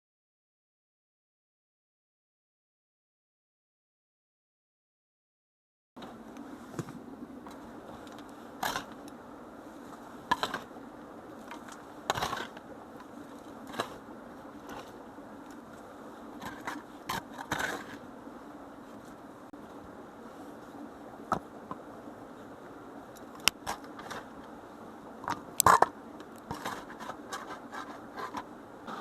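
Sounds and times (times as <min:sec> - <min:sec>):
scrapes and knocks: 0:06.0 - 0:09.0, 0:09.9 - 0:10.7, 0:11.4 - 0:12.6, 0:13.3 - 0:14.0, 0:16.4 - 0:18.0, 0:26.5 - 0:29.0
steady low hum: 0:06.0 - 0:29.0.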